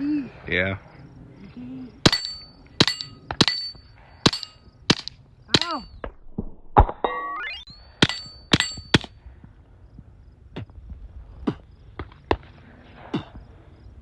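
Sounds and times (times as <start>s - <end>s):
high ringing clang: 2.0s - 6.0s, 7.0s - 9.2s.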